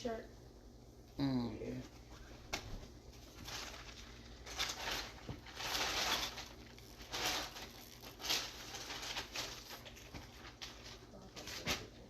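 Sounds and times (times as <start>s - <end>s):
fabric rustling: 3.2s - 11.9s.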